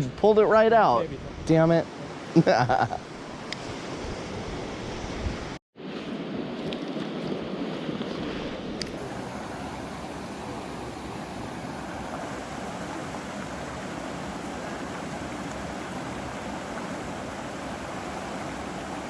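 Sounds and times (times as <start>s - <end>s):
stream rushing over rocks: 9.0s - 19.0s.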